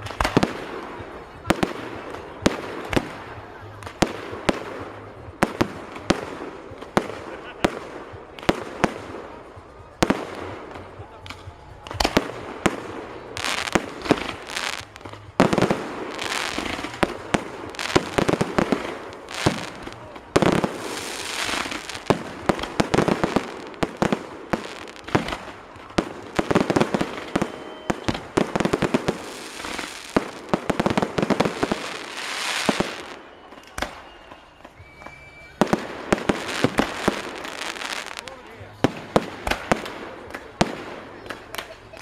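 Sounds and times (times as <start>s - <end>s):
fireworks bangs and crackling: 0.0s - 42.0s.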